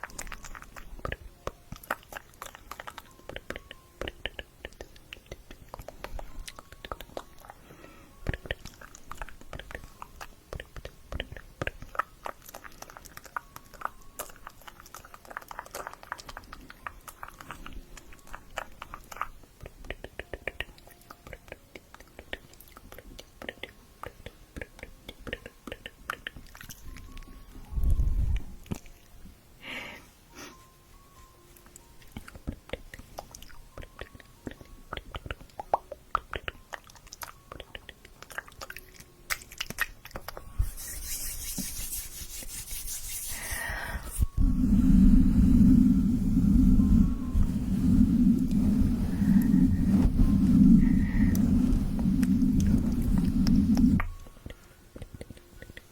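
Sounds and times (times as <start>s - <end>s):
wet mouth clicks and smacks: 0.0s - 7.6s, 8.3s - 27.3s, 31.6s - 40.6s, 54.0s - 55.9s
steady airy hiss: 40.6s - 54.8s.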